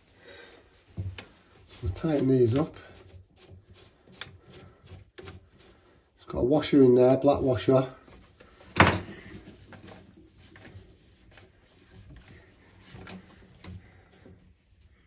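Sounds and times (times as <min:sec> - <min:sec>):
light clicks and rubbing: 0:00.8 - 0:05.7, 0:08.0 - 0:14.8.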